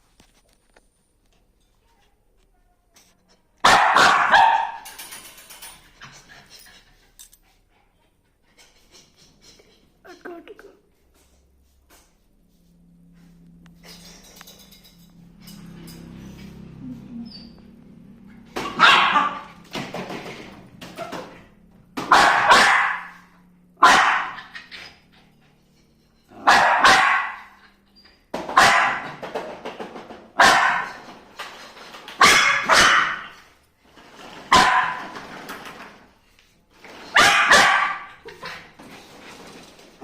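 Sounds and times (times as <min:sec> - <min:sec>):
dog barking: 0:03.6 - 0:04.8, 0:18.7 - 0:19.5, 0:22.0 - 0:24.5, 0:26.4 - 0:27.6, 0:28.6 - 0:29.1, 0:30.4 - 0:31.0, 0:32.2 - 0:33.4, 0:34.5 - 0:35.1, 0:37.1 - 0:38.2.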